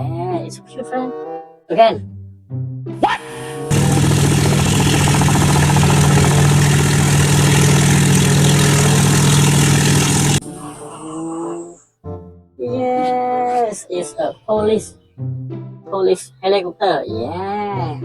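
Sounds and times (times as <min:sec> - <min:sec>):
toy vehicle buzzing hum: 0:03.7 - 0:10.4.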